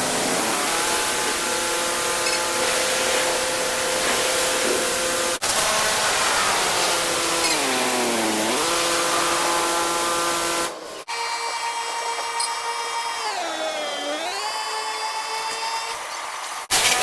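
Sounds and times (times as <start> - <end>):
electric motor running: 0.0 - 15.4.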